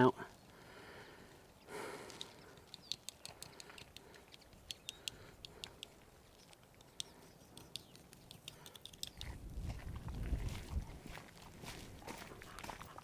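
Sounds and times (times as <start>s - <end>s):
quiet outdoor background noise: 0.0s - 13.0s
faint light clicks and ticks: 2.0s - 9.3s.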